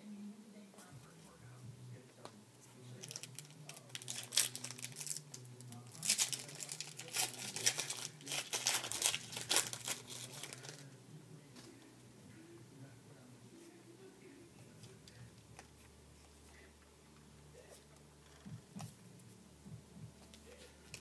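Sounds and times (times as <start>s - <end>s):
foil wrapper crinkling and tearing: 3.0s - 10.9s.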